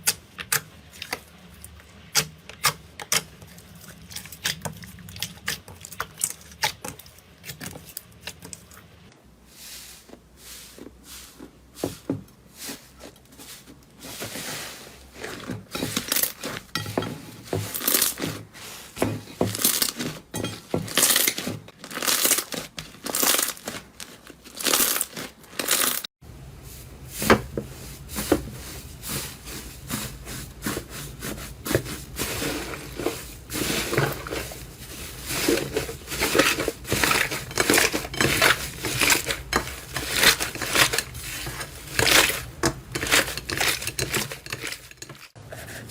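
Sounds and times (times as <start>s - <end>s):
slime crackling and popping: 21.0s - 26.1s.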